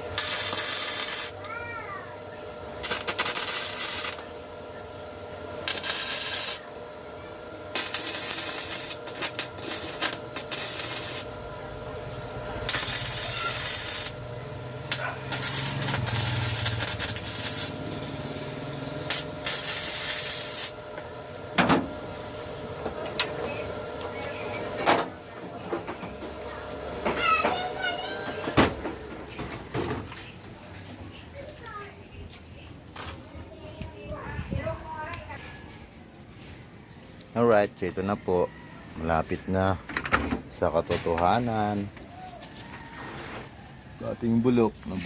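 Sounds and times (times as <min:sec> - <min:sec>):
steady hum: 0:00.0 - 0:42.4
bursts of hissing air: 0:12.5 - 0:14.2, 0:14.9 - 0:20.8.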